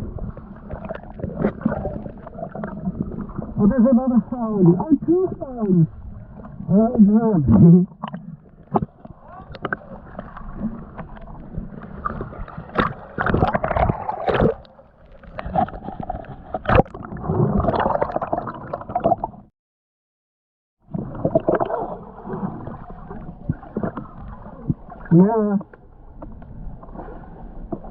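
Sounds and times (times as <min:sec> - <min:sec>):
muffled underwater sloshing: 0:00.0 - 0:19.5, 0:20.9 - 0:27.9
knocks and splashes: 0:12.0 - 0:14.7.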